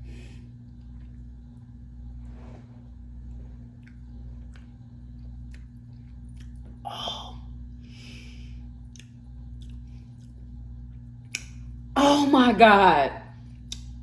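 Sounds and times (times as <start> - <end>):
steady low hum: 0.0 - 14.0
person chewing with mouth clicks: 3.7 - 6.8, 8.8 - 11.6, 13.5 - 14.0.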